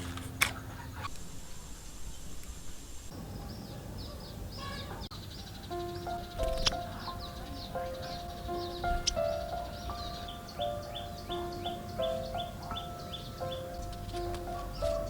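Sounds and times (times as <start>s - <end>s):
birds chirping: 0.0s - 2.3s, 3.1s - 15.0s
soft background music: 5.6s - 15.0s.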